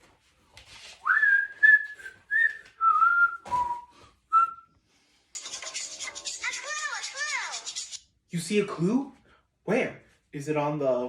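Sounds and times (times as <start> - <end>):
person whistling a tune: 1.0 - 4.8.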